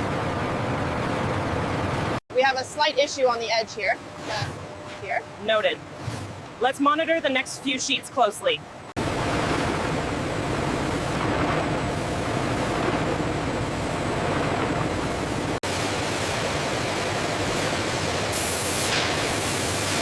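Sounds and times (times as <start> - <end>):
factory machinery hiss and rumble: 9.0 - 20.0
short sharp hiss: 18.3 - 20.0.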